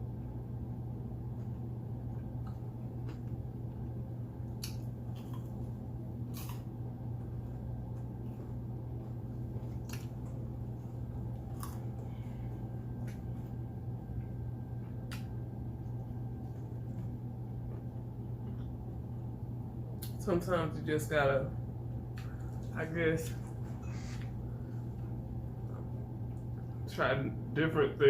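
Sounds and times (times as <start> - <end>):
steady low hum: 0.0 - 28.0
person chewing food: 1.3 - 18.9.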